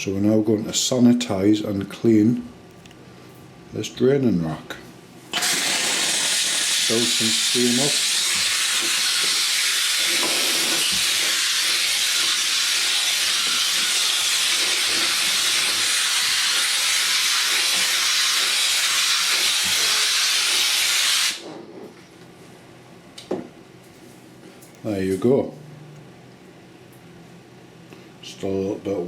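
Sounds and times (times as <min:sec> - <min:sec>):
steam cleaner hissing: 0:05.3 - 0:21.4.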